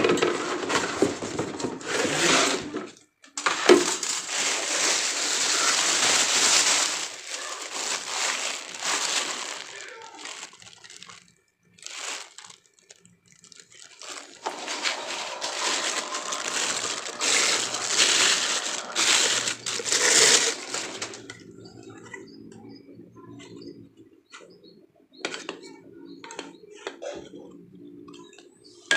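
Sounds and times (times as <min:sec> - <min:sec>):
plastic packaging crinkling: 0:00.1 - 0:22.0.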